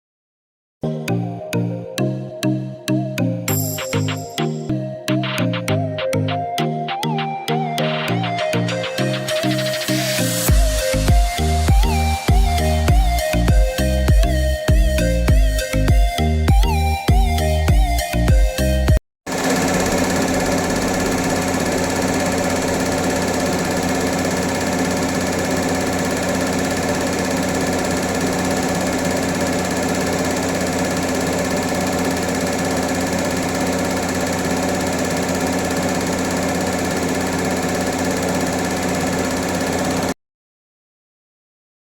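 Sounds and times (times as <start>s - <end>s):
engine running steadily: 19.3s - 40.2s.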